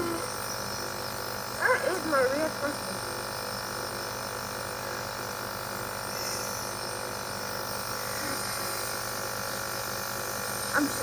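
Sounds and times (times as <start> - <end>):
nebulizer compressor buzzing: 0.0 - 11.0.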